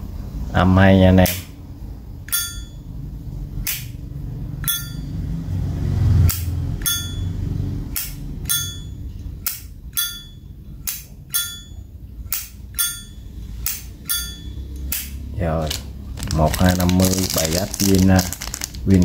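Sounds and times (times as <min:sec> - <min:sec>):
low rumble of handling: 0:15.3 - 0:19.0.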